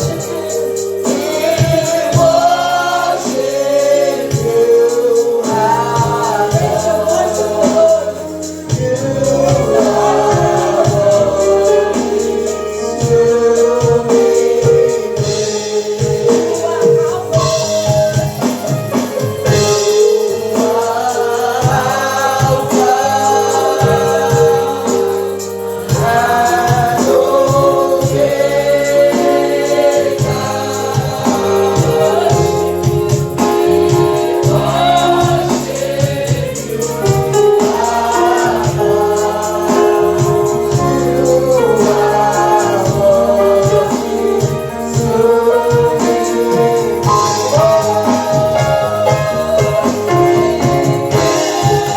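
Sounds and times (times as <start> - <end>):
choir and congregation singing: 0.0 - 51.9
keyboard accompaniment: 0.0 - 51.9.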